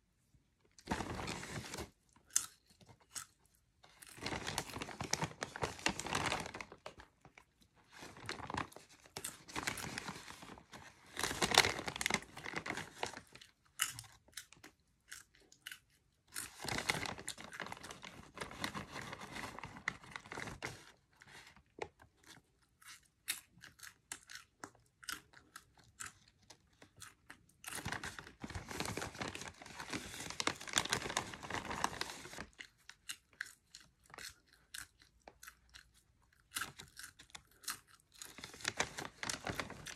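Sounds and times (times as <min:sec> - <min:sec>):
snack bag rustling: 0:00.8 - 0:23.1, 0:25.1 - 0:35.1, 0:35.7 - 0:39.9
popcorn crunching: 0:08.6 - 0:21.0, 0:21.8 - 0:39.9.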